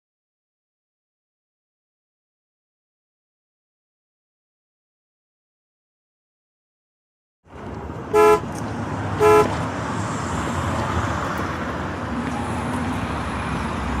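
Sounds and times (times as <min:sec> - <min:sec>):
traffic background noise: 0:07.5 - 0:14.0
short horn toots: 0:08.1 - 0:08.4, 0:09.2 - 0:09.6.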